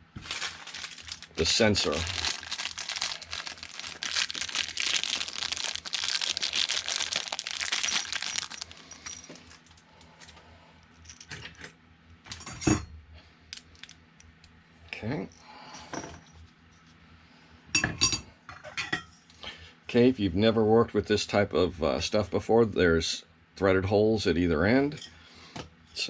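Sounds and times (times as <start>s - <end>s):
plastic packaging crinkling: 0.0s - 9.8s.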